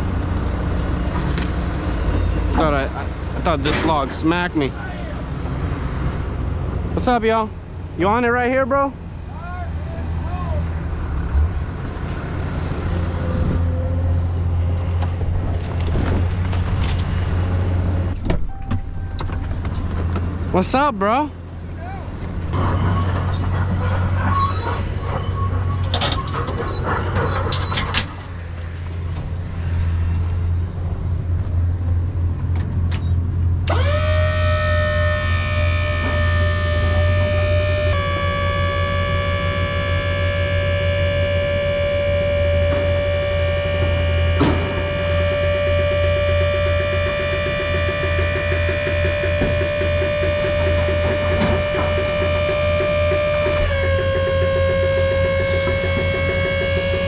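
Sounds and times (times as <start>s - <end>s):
machinery engine rumbling: 0.0s - 57.0s
music of long held chords: 35.4s - 57.0s.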